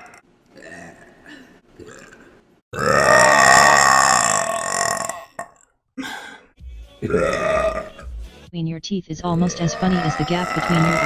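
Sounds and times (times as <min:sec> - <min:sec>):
woman burping: 0:00.0 - 0:06.3, 0:07.1 - 0:08.0, 0:09.3 - 0:11.0.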